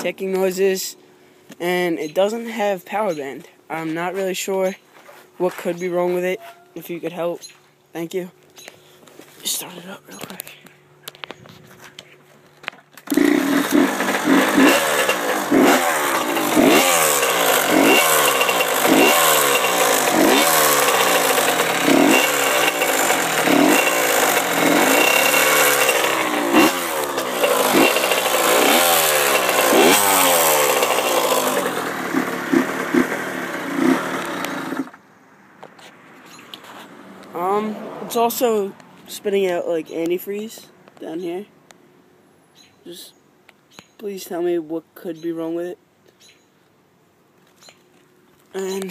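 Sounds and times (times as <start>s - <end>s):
dirt bike engine revving: 13.0s - 35.0s.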